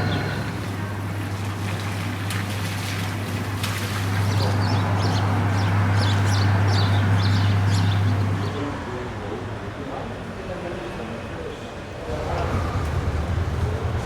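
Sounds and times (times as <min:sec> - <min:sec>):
engine idling hum: 0:00.0 - 0:08.8, 0:12.0 - 0:14.0
small birds chirping: 0:04.1 - 0:08.6.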